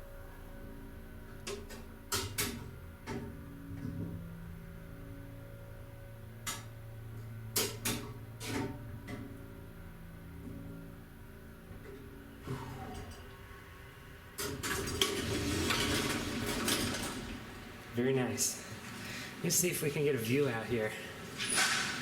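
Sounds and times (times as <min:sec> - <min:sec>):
elevator motor humming: 0:00.0 - 0:22.0.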